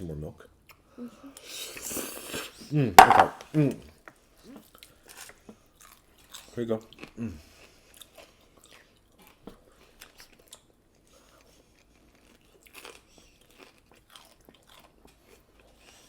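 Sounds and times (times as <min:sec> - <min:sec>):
chewing and crunching: 0:04.4 - 0:16.0.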